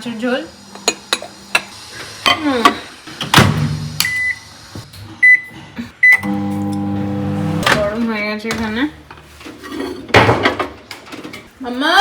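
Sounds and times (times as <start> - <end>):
microwave oven humming: 3.9 - 8.1
microwave keypad beeps: 4.0 - 4.4, 5.2 - 7.0.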